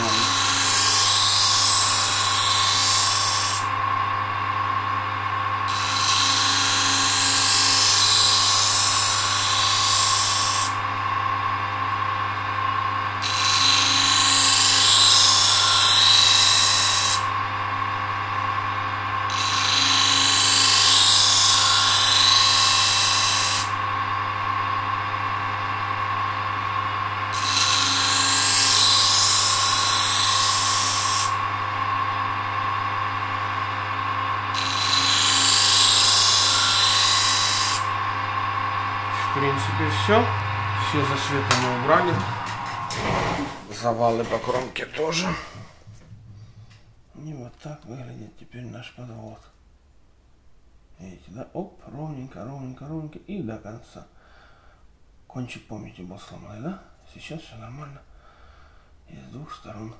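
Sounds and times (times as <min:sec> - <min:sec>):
electric grinder running: 0:00.0 - 0:45.3
knife blade grinding: 0:27.3 - 0:31.3, 0:34.5 - 0:37.9.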